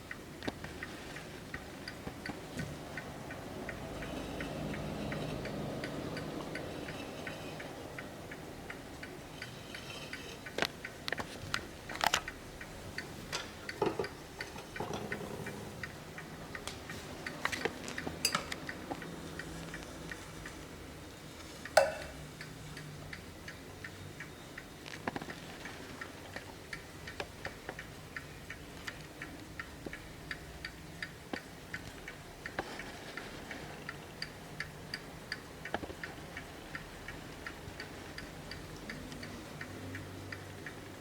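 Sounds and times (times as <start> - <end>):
irregular clicks and knocks: 0.0 - 20.2, 31.0 - 40.8
mantel clock ticking: 0.0 - 41.0.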